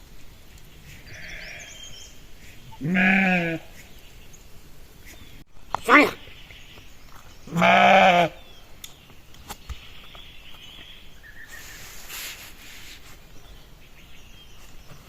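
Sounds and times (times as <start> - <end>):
sheep bleating: 1.1 - 1.9, 2.7 - 3.7, 7.5 - 8.4.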